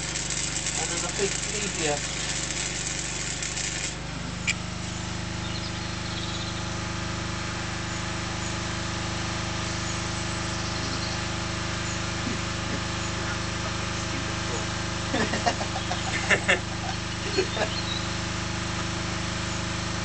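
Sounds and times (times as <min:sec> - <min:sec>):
hiss: 0:00.0 - 0:04.0
engine idling hum: 0:00.0 - 0:20.0.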